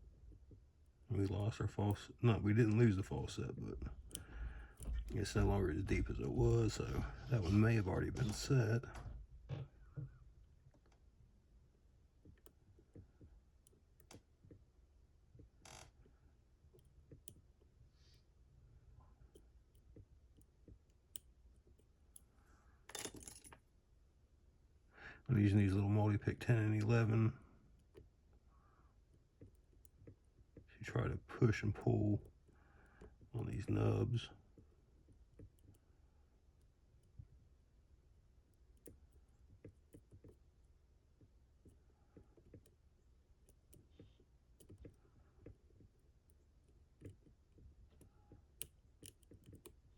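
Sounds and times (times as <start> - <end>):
lock picks clicking and scraping: 19.3 - 23.6, 47.0 - 49.9
lockpick scrape: 22.9 - 23.6.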